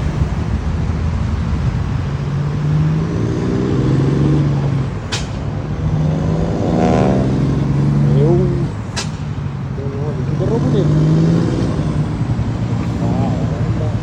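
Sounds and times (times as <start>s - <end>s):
truck engines pulling away: 0.0s - 14.0s.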